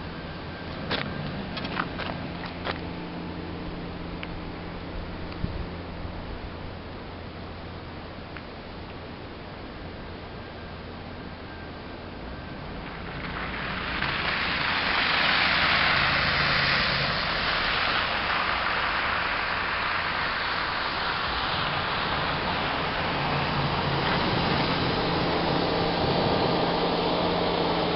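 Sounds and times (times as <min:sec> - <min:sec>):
electric snow shovel whirring: 0:12.2 - 0:27.9.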